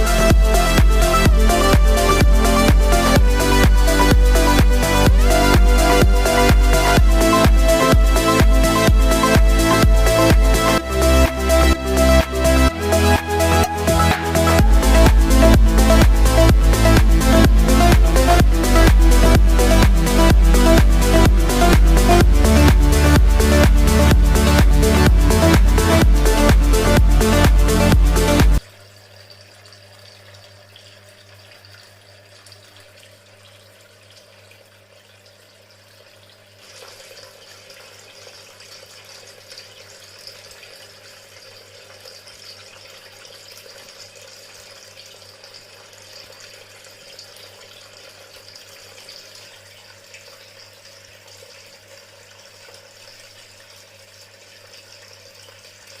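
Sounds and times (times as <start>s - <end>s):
constant low hum: 0.0s - 28.6s.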